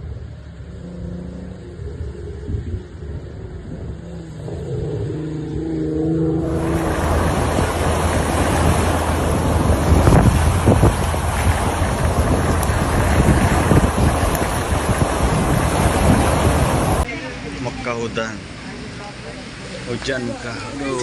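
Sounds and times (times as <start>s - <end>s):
strong wind and rain: 0.0s - 5.4s, 6.4s - 21.0s
low rumble: 0.0s - 17.5s
wind buffeting microphone: 1.4s - 17.1s.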